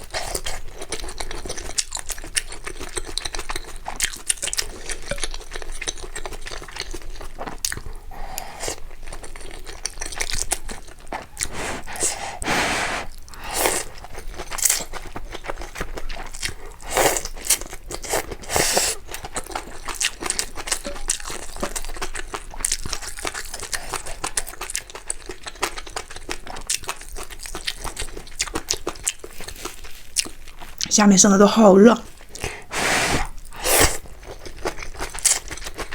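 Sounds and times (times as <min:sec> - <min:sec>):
person chewing and crunching: 0:00.0 - 0:30.9, 0:32.1 - 0:35.9
wet mouth clicks: 0:08.1 - 0:08.8, 0:11.2 - 0:13.9.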